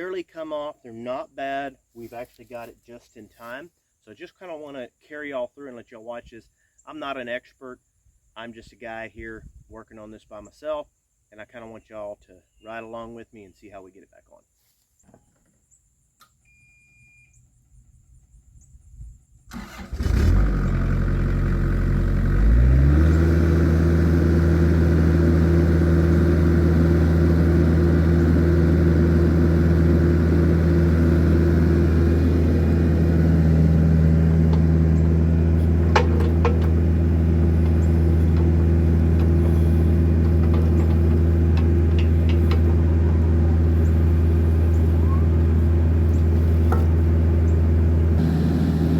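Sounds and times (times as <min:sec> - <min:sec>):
diesel engine starting and running: 0:19.5 - 0:48.9.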